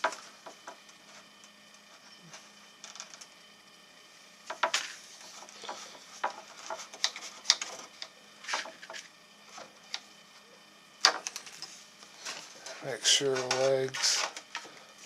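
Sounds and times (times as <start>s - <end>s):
knocks and scrapes of wood and tools: 4.5s - 9.7s, 11.0s - 14.8s.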